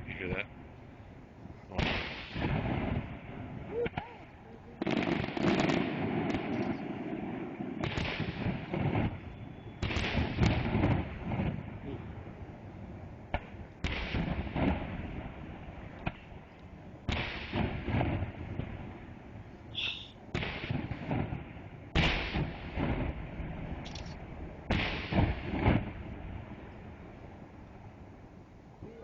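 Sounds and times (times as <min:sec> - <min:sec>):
fireworks bangs with echo: 0:01.7 - 0:12.3, 0:13.3 - 0:19.2, 0:20.2 - 0:26.7
fireworks crackles: 0:01.7 - 0:29.0.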